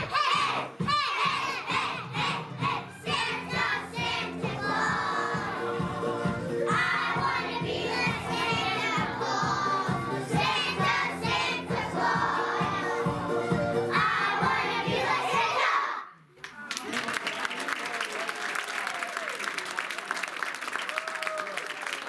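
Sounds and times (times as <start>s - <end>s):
children singing and shouting: 0.0s - 16.2s.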